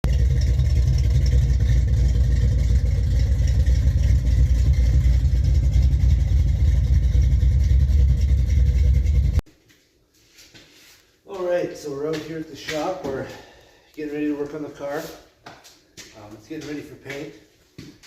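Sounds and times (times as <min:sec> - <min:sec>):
car engine running: 0:00.0 - 0:09.4.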